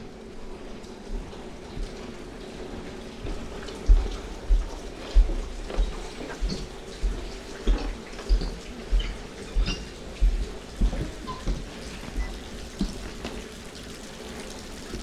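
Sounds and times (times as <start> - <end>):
rain falling: 0.0 - 15.0
drip-like ticks: 3.2 - 15.0.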